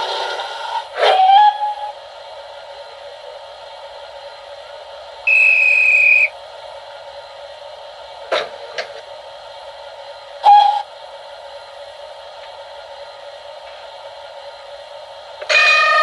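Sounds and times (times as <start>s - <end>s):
high steam whistle: 0.0s - 2.0s, 5.2s - 6.4s, 10.4s - 10.9s, 15.4s - 16.0s
steam hissing: 0.0s - 16.0s.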